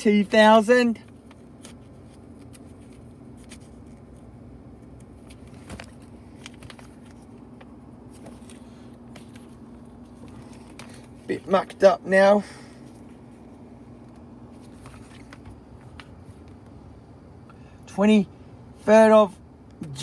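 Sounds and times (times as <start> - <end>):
steady low hum: 0.0 - 20.0
paper logbook handling rustles: 1.0 - 11.8, 12.6 - 16.7.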